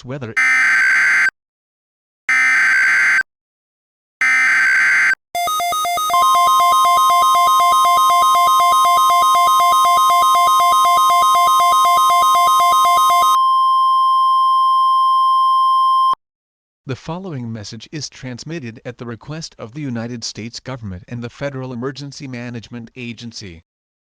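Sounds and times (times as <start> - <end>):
pulsing electronic alert tone: 4.2 - 13.4.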